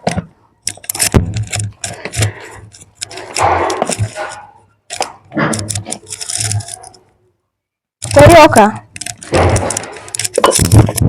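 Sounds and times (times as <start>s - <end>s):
knocks and clatters of handling: 0.0s - 7.2s, 8.0s - 11.0s
rustling scraping noise: 0.8s - 7.1s, 8.0s - 11.0s.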